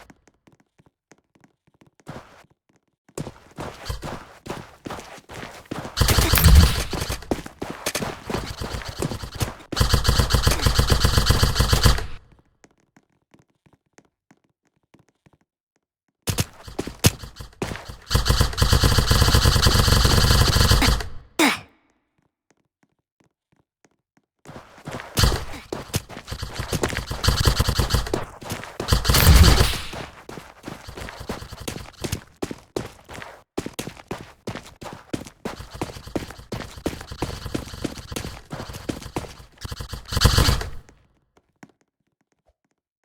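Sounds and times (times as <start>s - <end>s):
airsoft gun full-auto bursts: 6.0s - 12.2s, 16.3s - 21.3s, 25.2s - 32.2s, 35.5s - 40.9s.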